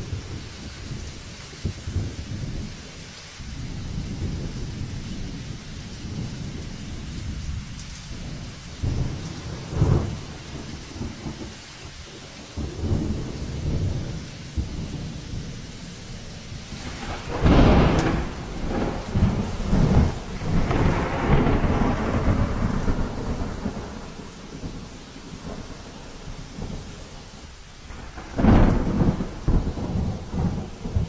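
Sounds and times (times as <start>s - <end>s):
faint hiss of rain: 0.0s - 31.0s
low rumble of storm: 0.0s - 31.0s.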